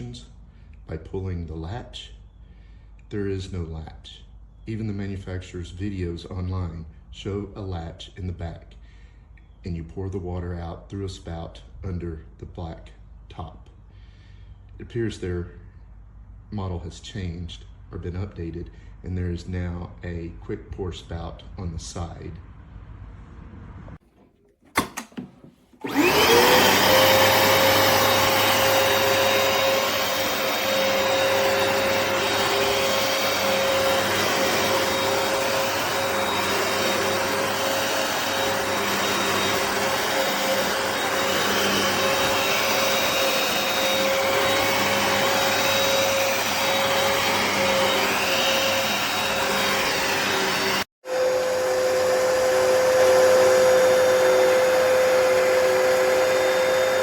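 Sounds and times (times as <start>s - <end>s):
carpet cleaner motor whining: 24.0s - 57.0s
rushing suction noise: 25.8s - 57.0s.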